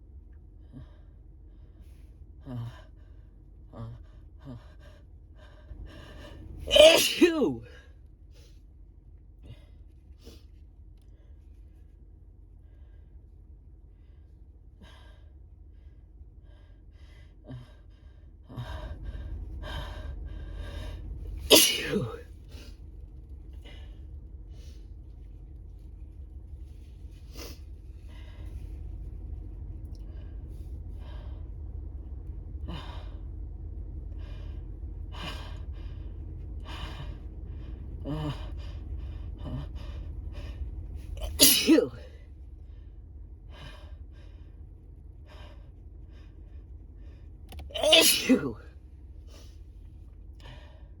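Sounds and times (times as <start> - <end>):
low hum: 0.0 - 51.0
person sneezing: 6.7 - 7.7, 21.5 - 22.2, 41.2 - 42.1, 47.6 - 48.6.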